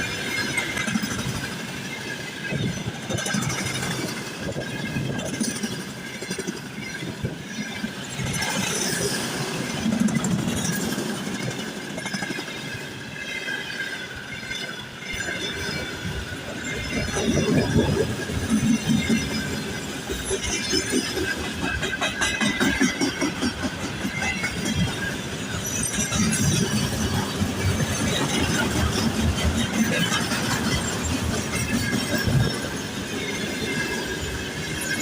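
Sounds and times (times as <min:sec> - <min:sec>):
train wheels rumbling on rail: 0:00.0 - 0:35.0.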